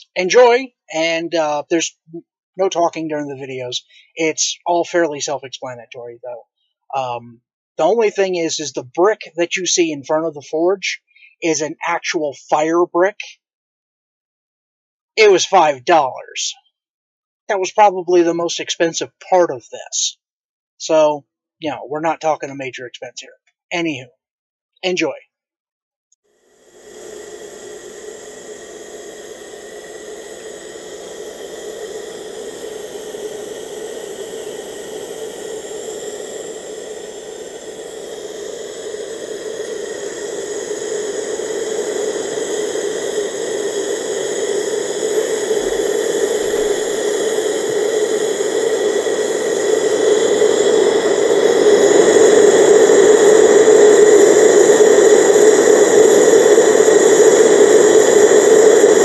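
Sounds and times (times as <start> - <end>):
gas torch burner hissing: 26.4 - 59.0.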